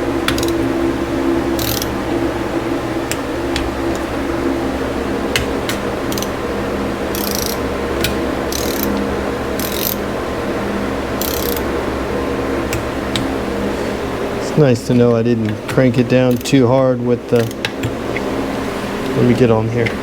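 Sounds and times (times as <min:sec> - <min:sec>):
steady low hum: 0:00.0 - 0:20.0
sharp clicks: 0:00.2 - 0:00.7, 0:01.6 - 0:02.0, 0:05.3 - 0:06.4, 0:07.1 - 0:10.0
torque wrench ratcheting: 0:00.3 - 0:00.7, 0:01.6 - 0:01.9, 0:05.4 - 0:06.4, 0:07.1 - 0:09.0, 0:09.6 - 0:10.0, 0:11.2 - 0:11.7, 0:16.3 - 0:16.6, 0:17.4 - 0:18.0.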